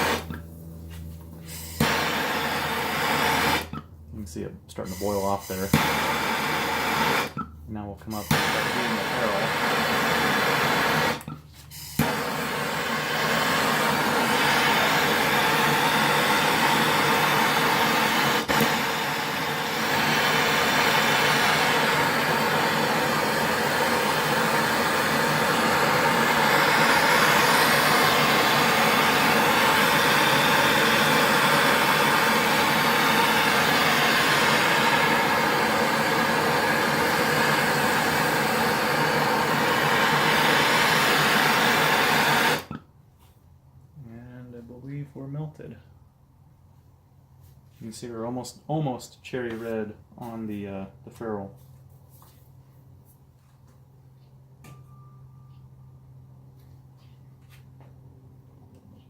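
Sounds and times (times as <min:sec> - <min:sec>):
gas torch hissing: 0:00.0 - 0:03.9, 0:04.8 - 0:07.4, 0:08.1 - 0:42.8.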